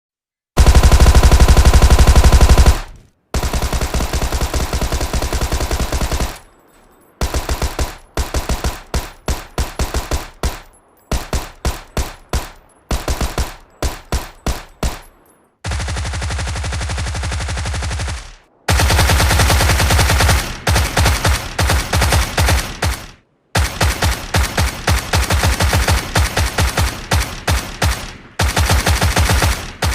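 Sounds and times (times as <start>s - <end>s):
submachine gun bursts: 0.6s - 6.5s.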